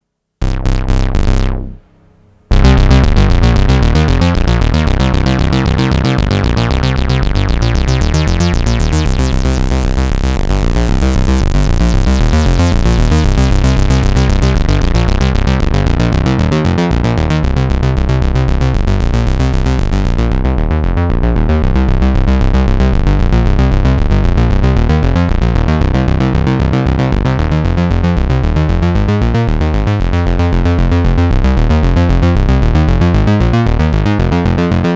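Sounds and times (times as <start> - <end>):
synthesizer playing repeating sequence: 0.4 - 1.8, 2.5 - 20.5.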